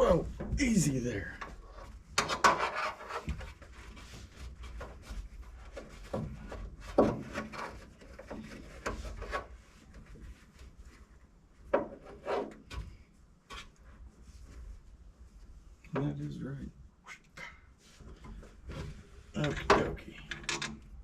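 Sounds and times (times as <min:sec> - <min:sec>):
rubbing and scraping: 0:00.3 - 0:15.6
knocks and clunks: 0:18.2 - 0:20.8.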